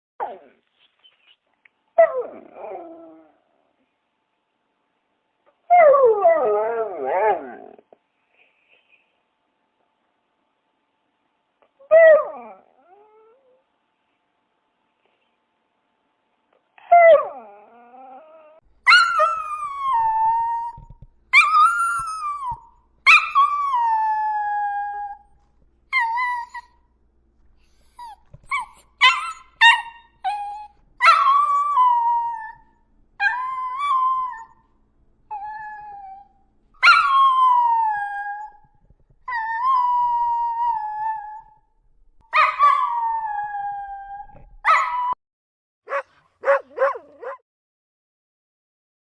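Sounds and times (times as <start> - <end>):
dog yipping: 18.9 - 19.6, 27.9 - 31.7, 45.9 - 47.4.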